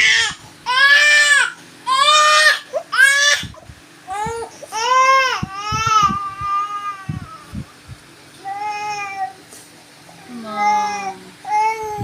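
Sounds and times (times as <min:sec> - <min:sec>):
baby crying: 0:00.0 - 0:03.5.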